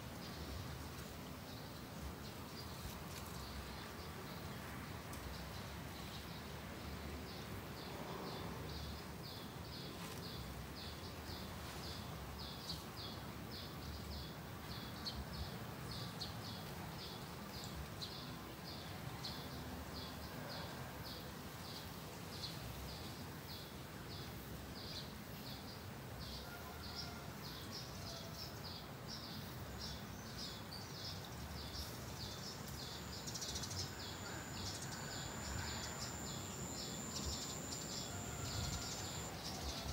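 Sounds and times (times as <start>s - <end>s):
thin high buzz: 33.2s - 39.5s.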